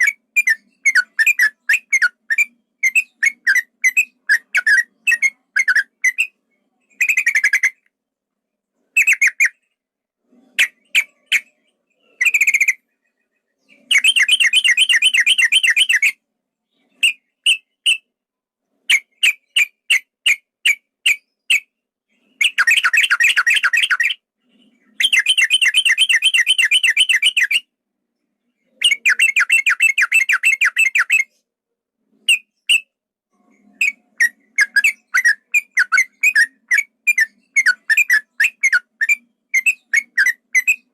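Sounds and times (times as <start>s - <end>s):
bulbul singing: 0.0s - 7.8s, 10.6s - 18.1s, 18.9s - 27.7s, 33.5s - 40.9s.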